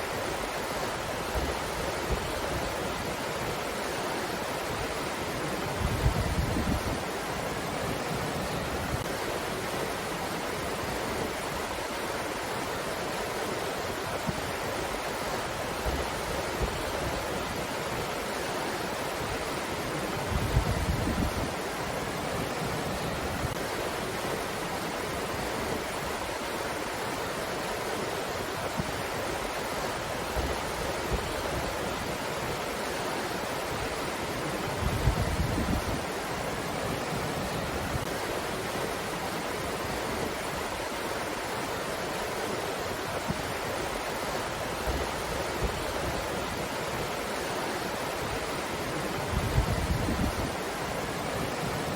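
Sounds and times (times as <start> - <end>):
wind buffeting microphone: 20.2 - 21.6, 34.7 - 36.1, 49.2 - 51.9.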